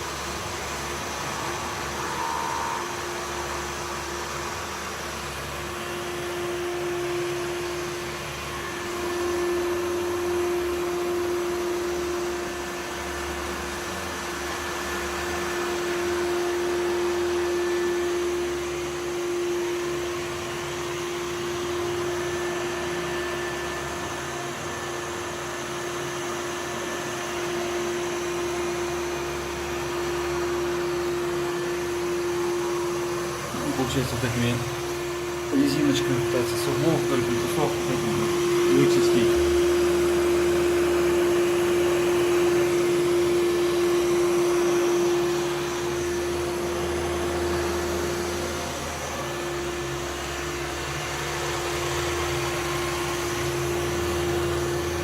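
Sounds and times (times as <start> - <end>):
robot vacuum whirring: 25.8 - 55.0.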